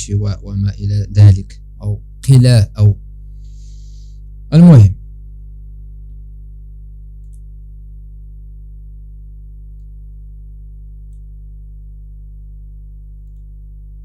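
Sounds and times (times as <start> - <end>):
low electrical hum: 0.0 - 14.0
faint clicks: 7.2 - 7.5, 11.0 - 11.3, 13.2 - 13.6.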